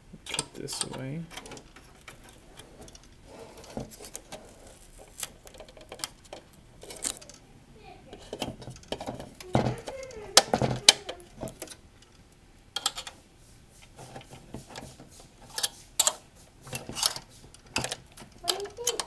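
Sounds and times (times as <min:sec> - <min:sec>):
plastic and metal parts rattling: 0:00.3 - 0:07.4, 0:08.1 - 0:12.2, 0:14.2 - 0:19.0.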